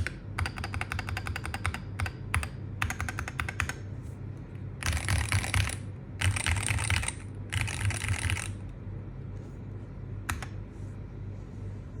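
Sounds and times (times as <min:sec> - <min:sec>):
rapid keyboard key clatter: 0:00.0 - 0:03.8, 0:04.8 - 0:08.6, 0:10.3 - 0:10.5.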